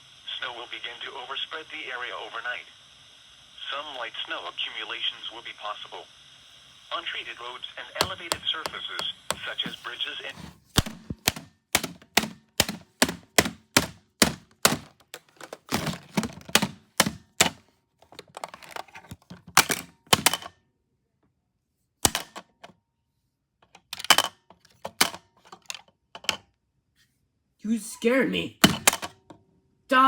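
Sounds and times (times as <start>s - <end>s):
alarm clock being smashed: 10.8s - 17.6s, 19.6s - 20.5s, 22.0s - 22.4s, 28.6s - 29.1s.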